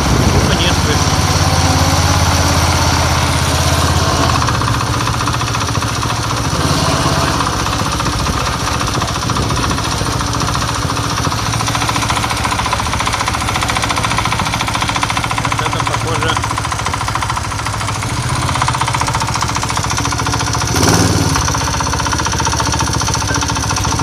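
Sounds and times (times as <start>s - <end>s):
engine running with rattling knock: 0.0s - 24.0s.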